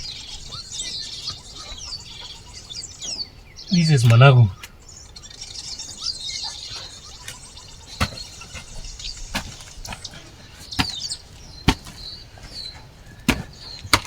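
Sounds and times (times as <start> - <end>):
hoe chopping into soil: 7.2 - 14.0.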